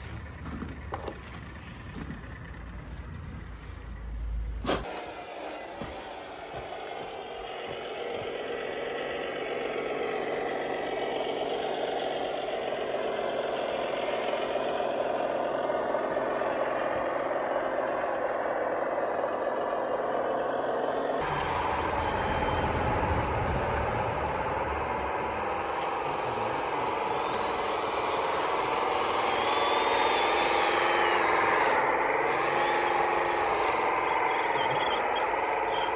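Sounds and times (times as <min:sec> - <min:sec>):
model machine motor hum: 0:07.2 - 0:35.9.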